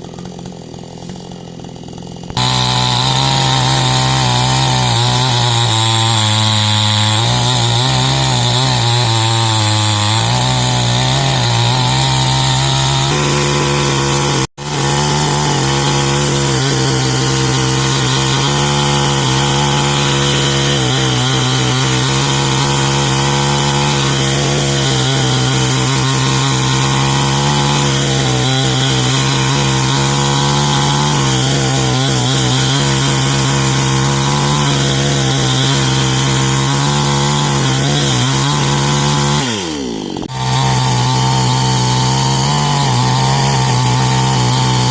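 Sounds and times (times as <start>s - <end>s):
chainsaw cutting wood: 0.0s - 44.9s.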